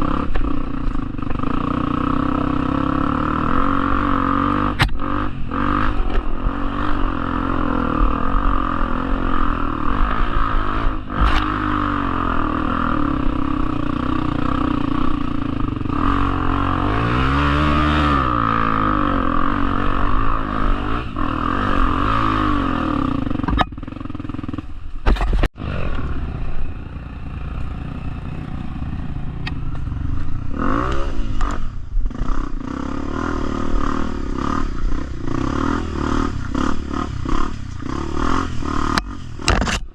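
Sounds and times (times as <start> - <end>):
motorcycle engine revving: 0.0 - 39.9
clattering and scraping over ground: 25.0 - 25.5.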